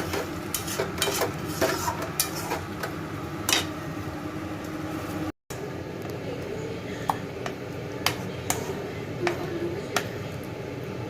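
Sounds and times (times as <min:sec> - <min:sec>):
utensil scraping a cooking pan: 0:00.0 - 0:02.9, 0:08.0 - 0:10.1.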